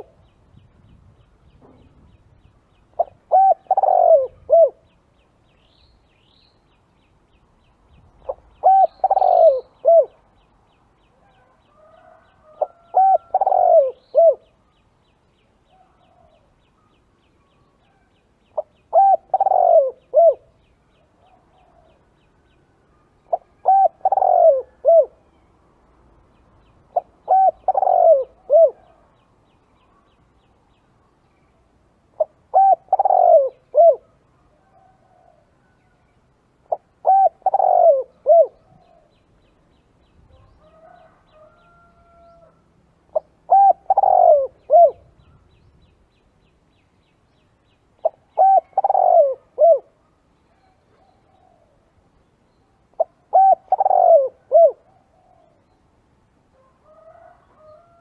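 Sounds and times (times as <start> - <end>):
dove cooing: 0.0 - 0.3, 2.9 - 5.0, 8.2 - 10.2, 12.0 - 14.6, 17.9 - 20.6, 23.3 - 25.2, 26.9 - 29.0, 32.2 - 35.4, 36.6 - 39.1, 40.7 - 45.2, 48.0 - 50.0, 52.9 - 55.6.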